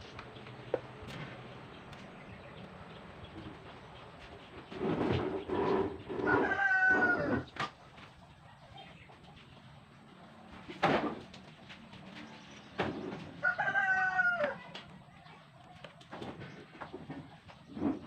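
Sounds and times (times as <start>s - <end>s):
rooster crowing: 6.2s - 7.5s, 13.4s - 14.8s.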